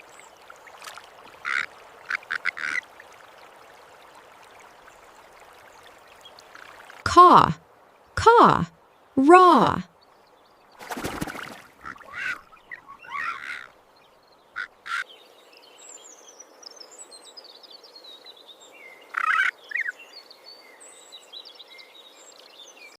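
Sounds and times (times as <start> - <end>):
small birds twittering: 9.9 - 23.0
ravens calling harshly: 11.8 - 13.7, 14.6 - 15.0.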